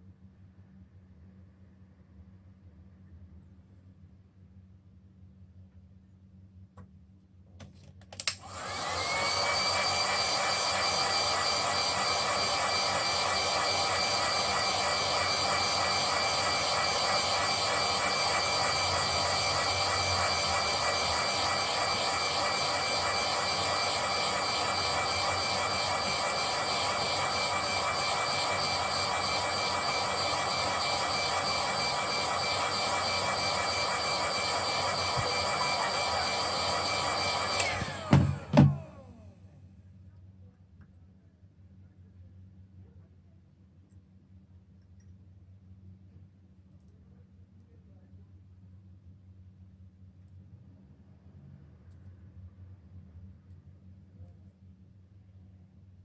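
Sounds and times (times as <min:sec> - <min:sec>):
electric blower motor running: 0:08.4 - 0:39.4.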